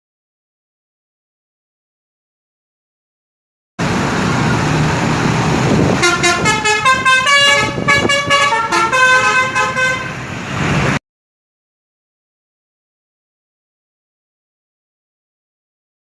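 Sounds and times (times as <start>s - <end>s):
bus engine rumble: 3.8s - 11.0s
musical bus horn playing a tune: 5.9s - 10.3s.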